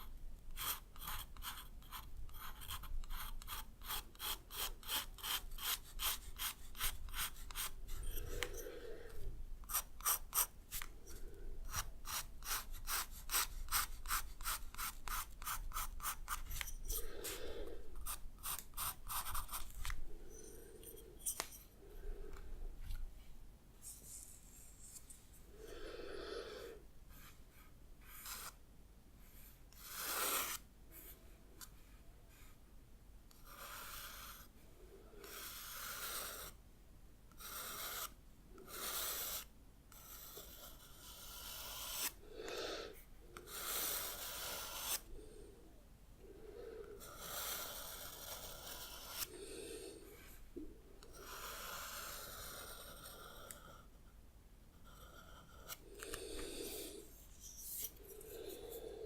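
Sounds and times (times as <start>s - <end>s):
pencil scratching on paper: 0.0s - 8.7s, 9.6s - 21.6s, 27.1s - 28.6s, 29.2s - 31.2s, 33.3s - 34.5s, 35.2s - 36.6s, 37.3s - 42.2s, 43.4s - 45.1s, 47.0s - 49.3s, 51.1s - 53.9s, 54.7s - 58.8s
heavy breathing: 7.6s - 9.5s, 16.3s - 23.3s, 25.4s - 27.3s, 42.1s - 43.1s, 49.2s - 50.7s, 55.7s - 59.0s.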